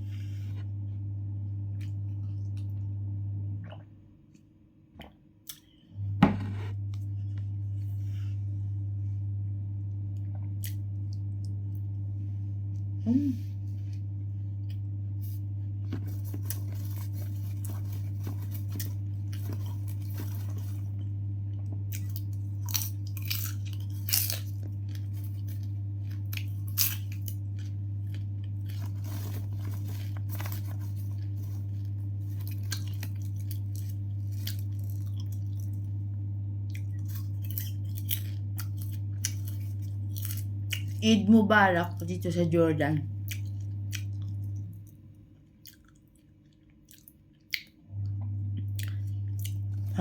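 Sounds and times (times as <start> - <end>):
steady low hum: 0.0 - 50.0
person chewing crunchy snack: 15.9 - 35.8, 36.7 - 41.0, 45.6 - 47.7, 48.7 - 49.9.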